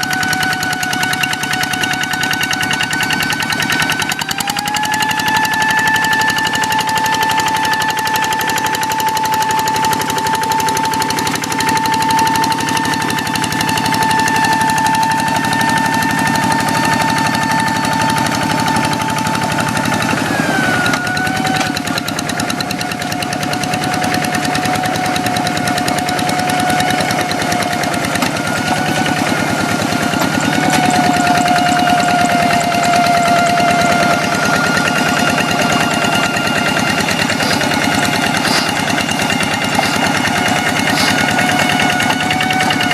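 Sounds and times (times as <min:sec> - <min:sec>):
diesel engine knocking: 0:00.0 - 0:42.9.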